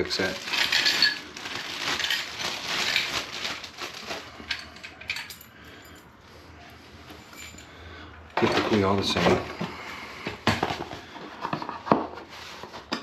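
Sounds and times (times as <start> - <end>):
packaging crackling: 0.0 - 4.8
metal parts clinking and scraping: 0.2 - 6.0.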